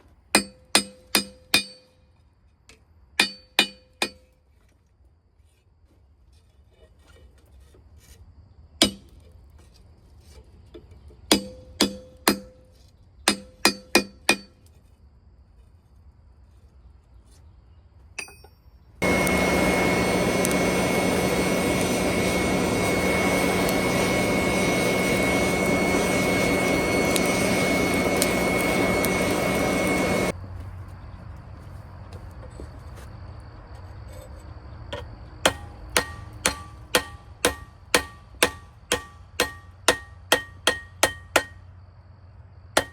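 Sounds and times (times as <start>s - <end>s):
hammer striking steel: 0.4s - 2.0s, 3.2s - 4.3s, 8.8s - 9.0s, 11.3s - 12.7s, 13.3s - 14.5s, 35.4s - 41.6s
machine roar with high whine: 19.0s - 30.6s.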